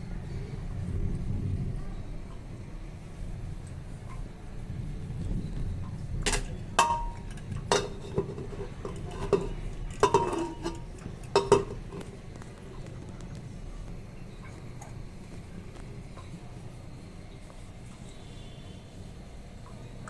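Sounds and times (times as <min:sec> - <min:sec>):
low steady hum: 0:00.0 - 0:20.0
utensils clinking on cookware: 0:06.2 - 0:12.9.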